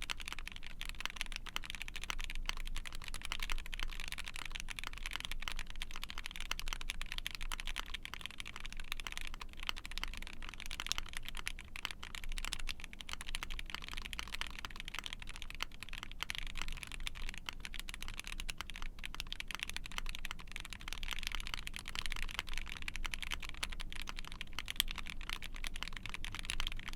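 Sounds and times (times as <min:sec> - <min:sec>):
mechanical keyboard typing: 0:00.0 - 0:26.9.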